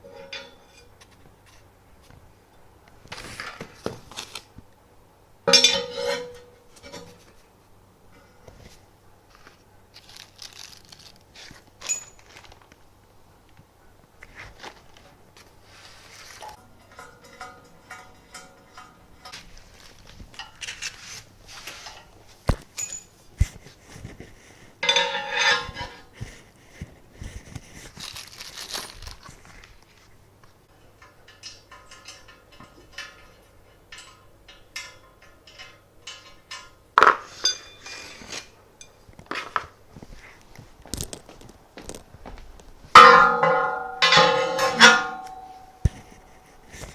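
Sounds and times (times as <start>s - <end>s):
rustling: 3.0s - 4.6s, 8.4s - 12.8s, 14.2s - 17.4s, 19.2s - 30.3s, 37.2s - 46.9s
hard parts clinking and knocking: 5.5s - 7.4s, 16.4s - 21.0s, 21.8s - 23.1s, 24.8s - 26.0s, 30.8s - 39.7s, 42.9s - 46.9s.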